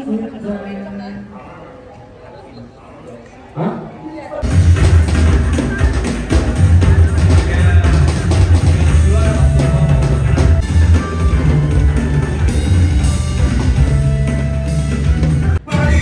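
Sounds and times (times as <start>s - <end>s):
drum kit: 4.4s - 16.0s
heavy bass: 4.4s - 16.0s
rock band playing loudly: 4.4s - 16.0s.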